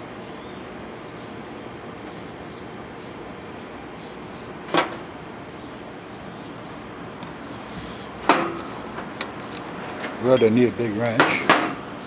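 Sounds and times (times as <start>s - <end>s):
sharp metal clank: 8.3s - 9.7s.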